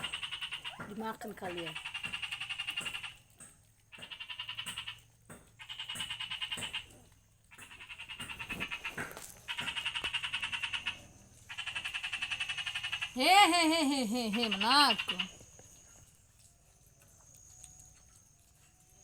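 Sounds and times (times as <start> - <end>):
frog calling in trills: 0.0 - 3.2, 3.9 - 5.0, 5.6 - 6.9, 7.5 - 15.5.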